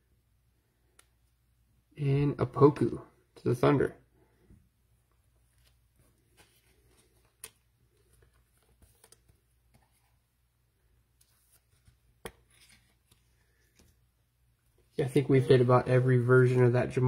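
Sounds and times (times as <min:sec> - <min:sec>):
trading cards rustling: 0:05.3 - 0:10.3, 0:11.0 - 0:14.2.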